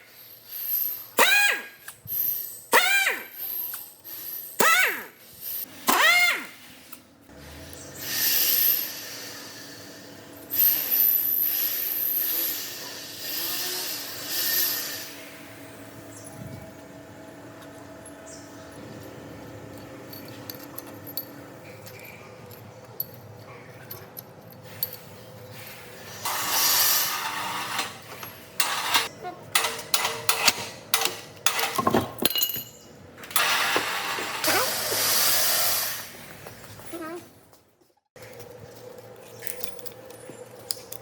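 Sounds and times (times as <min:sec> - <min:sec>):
sharp metallic clanks and clicks: 0:27.2 - 0:34.6.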